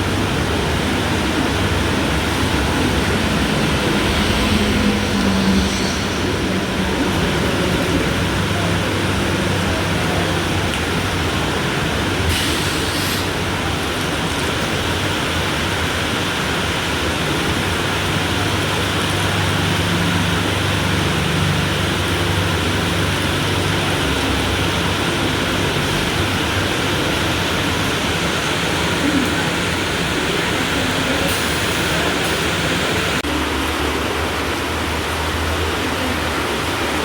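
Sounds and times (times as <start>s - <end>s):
heavy rain: 0.0s - 37.0s
train running: 0.0s - 37.0s
low hum: 2.4s - 8.5s.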